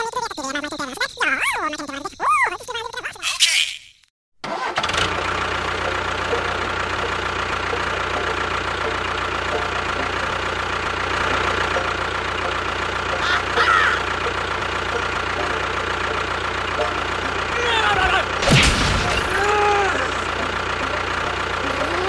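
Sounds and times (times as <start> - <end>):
small engine running: 4.4 - 22.0.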